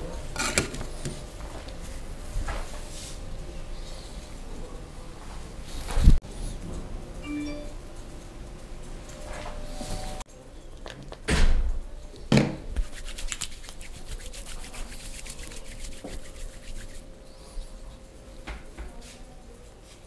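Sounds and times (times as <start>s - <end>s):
scratching and rubbing on skin: 12.8s - 17.8s.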